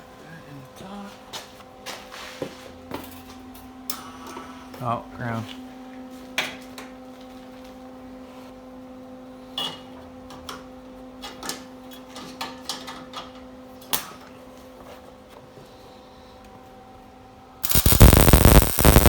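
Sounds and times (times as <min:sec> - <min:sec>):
electrical hum: 0:17.6 - 0:19.0.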